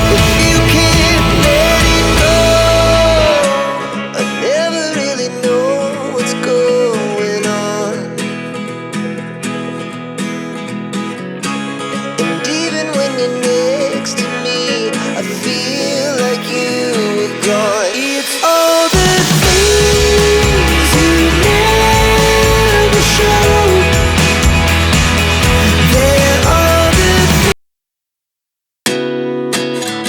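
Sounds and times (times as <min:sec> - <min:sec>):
full band with heavy bass: 0:00.0 - 0:04.1, 0:17.4 - 0:27.6
plucked guitar: 0:00.0 - 0:27.6, 0:28.9 - 0:30.0.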